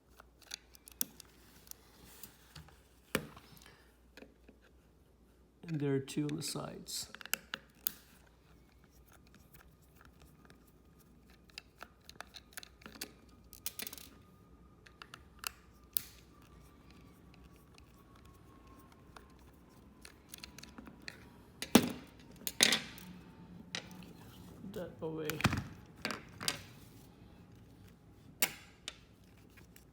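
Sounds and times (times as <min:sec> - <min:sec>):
small screwdriver clicking and scraping: 0:07.1 - 0:13.9, 0:14.8 - 0:21.2.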